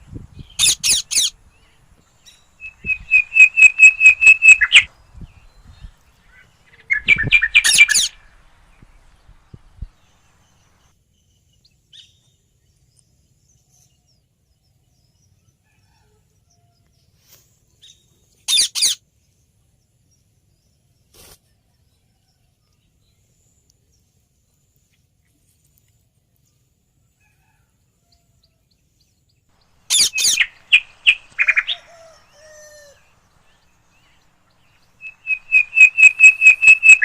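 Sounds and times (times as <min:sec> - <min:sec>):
parakeets calling: 0:00.5 - 0:01.4, 0:07.1 - 0:08.3, 0:29.8 - 0:37.0.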